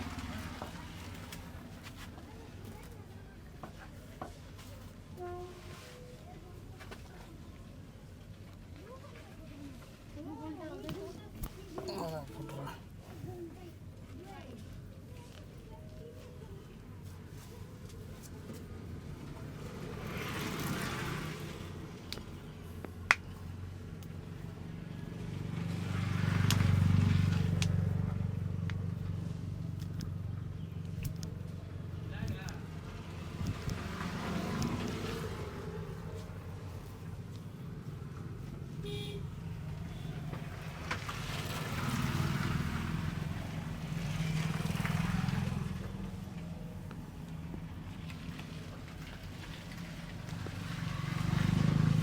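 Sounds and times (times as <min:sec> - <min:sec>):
passing vehicle engine hum: 0:00.0 - 0:03.4, 0:16.0 - 0:52.0.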